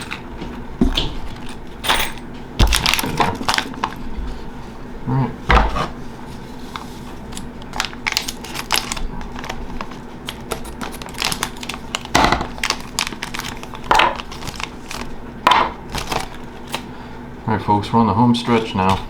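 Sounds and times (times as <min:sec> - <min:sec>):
packaging rustling: 0:02.6 - 0:04.2, 0:06.4 - 0:16.9.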